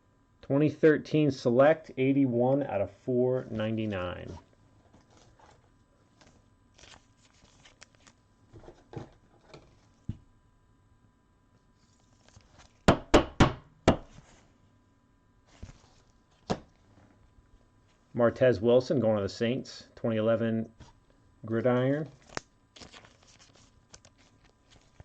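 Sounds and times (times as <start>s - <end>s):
cards scraping and rustling: 4.2s - 10.0s, 11.8s - 12.8s, 22.1s - 25.0s.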